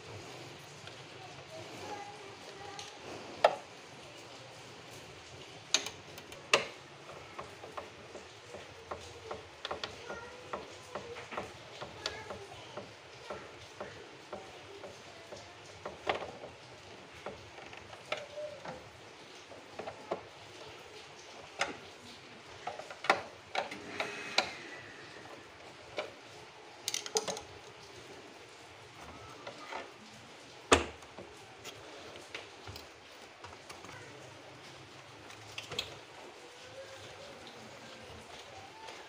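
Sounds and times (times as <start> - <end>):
clicks and knocks of hard parts: 5.3 - 28.1, 28.9 - 36.2.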